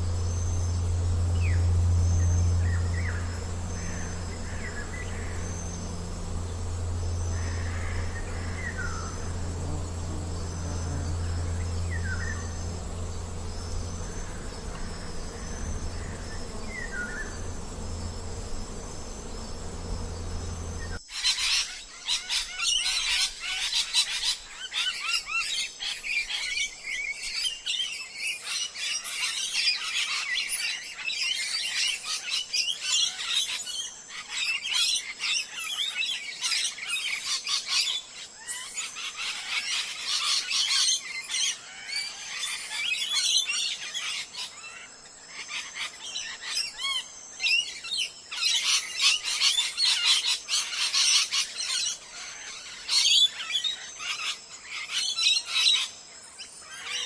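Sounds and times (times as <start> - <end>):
buzzing hum: 0.0 - 21.0
many small birds chirping: 0.0 - 21.3.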